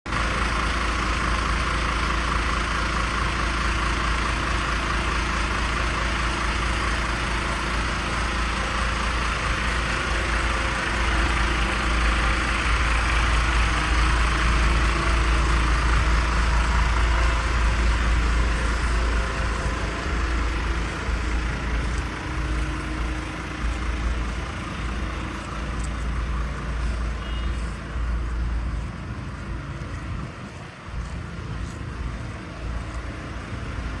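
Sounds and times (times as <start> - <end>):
road noise: 0.0 - 34.0
truck engine running: 0.1 - 34.0.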